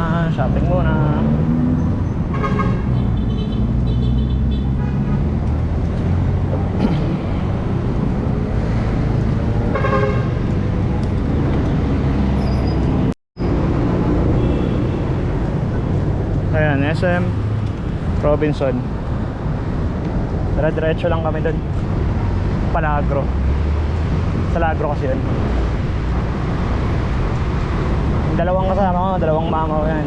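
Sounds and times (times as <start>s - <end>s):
road traffic engines: 0.0s - 30.0s
car horns: 2.3s - 6.8s, 9.7s - 10.5s, 14.4s - 15.2s.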